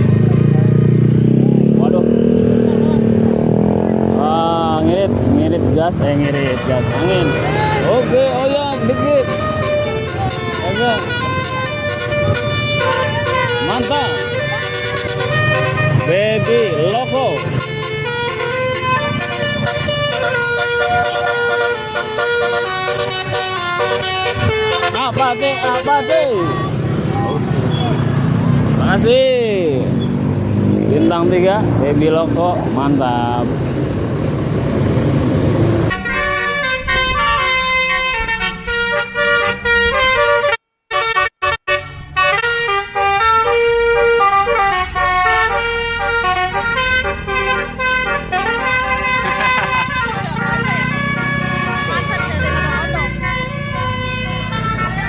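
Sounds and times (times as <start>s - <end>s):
musical air horn playing chords: 6.2s - 26.8s, 35.7s - 55.0s.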